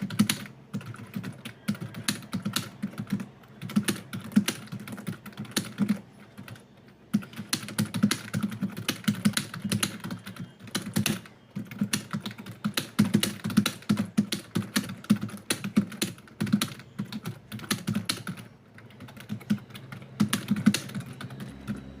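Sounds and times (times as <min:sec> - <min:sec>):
fast typing on keyboard: 0:00.0 - 0:21.9.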